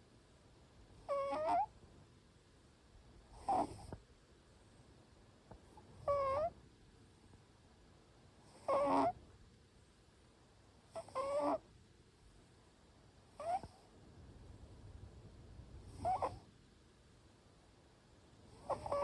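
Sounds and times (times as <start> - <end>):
cat snoring: 1.0 - 1.7, 3.3 - 4.0, 5.7 - 6.5, 8.4 - 9.2, 10.9 - 11.6, 13.3 - 13.9, 15.8 - 16.5, 18.5 - 19.0.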